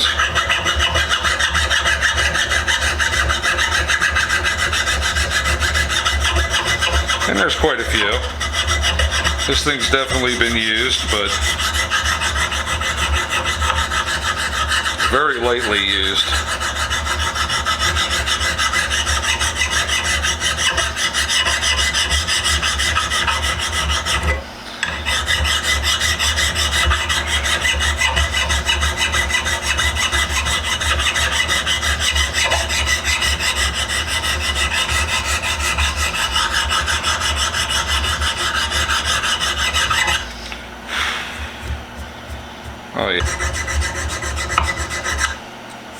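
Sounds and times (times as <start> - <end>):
abrasive tool rubbing steel: 0.0 - 45.7.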